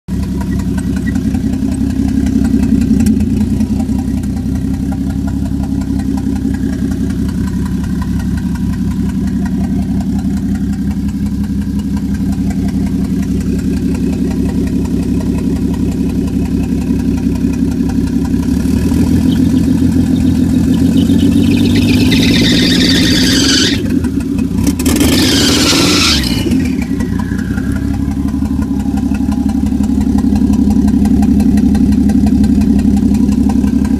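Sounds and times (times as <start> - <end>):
car engine idling and revving: 0.0 - 33.9
high squeaky squeal: 19.2 - 24.1, 25.0 - 30.2.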